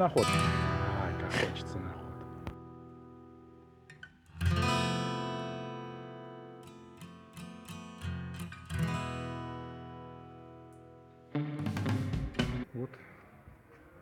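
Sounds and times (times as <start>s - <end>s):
acoustic guitar strumming: 0.0s - 12.6s.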